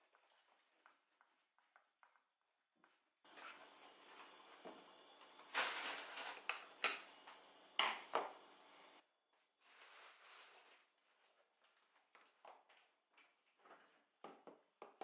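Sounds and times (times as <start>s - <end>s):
faint steady hum: 3.3s - 9.0s.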